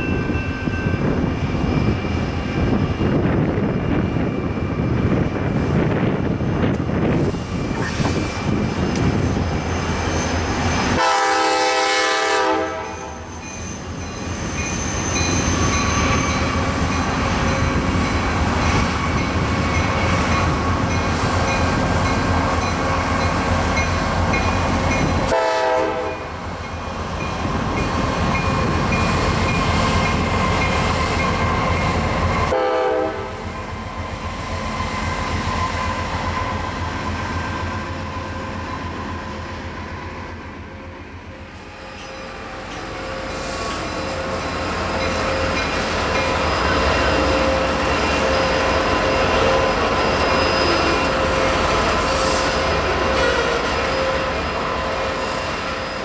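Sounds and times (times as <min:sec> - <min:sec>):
freight train rumbling: 0:00.0 - 0:56.0
locomotive air horn blasts: 0:10.9 - 0:13.2, 0:25.2 - 0:26.3, 0:32.4 - 0:33.4, 0:52.2 - 0:55.2.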